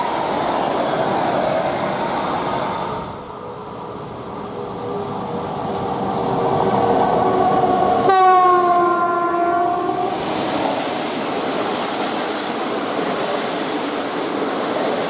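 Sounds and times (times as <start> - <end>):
train passing: 0.0 - 15.0
locomotive horn blast: 8.0 - 10.2.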